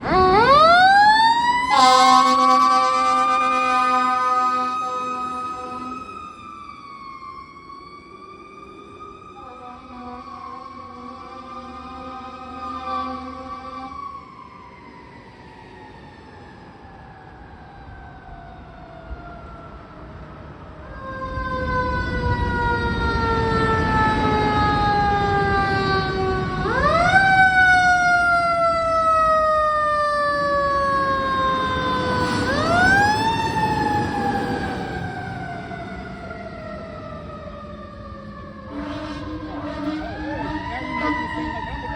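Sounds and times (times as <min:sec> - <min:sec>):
truck engine and road noise: 0:00.0 - 0:41.9.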